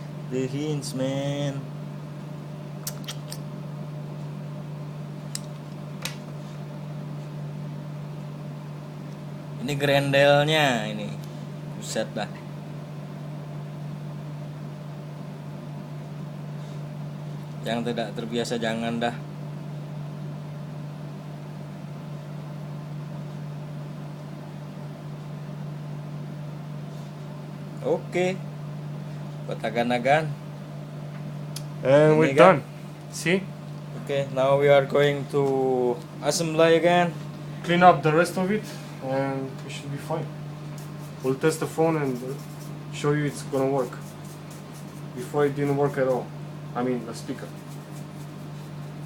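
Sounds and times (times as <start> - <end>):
low electrical hum: 0.0 - 49.0
small sharp clicks: 2.8 - 3.4.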